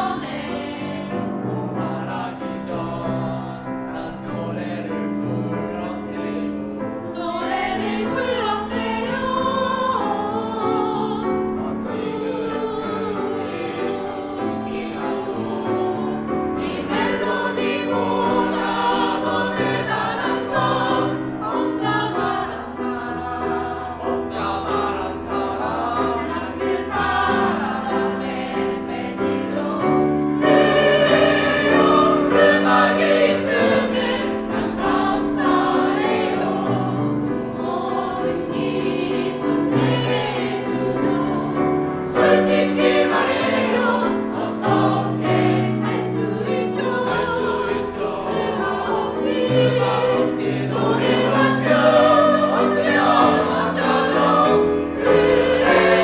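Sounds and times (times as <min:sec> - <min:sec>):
choir singing: 0:00.0 - 0:56.0.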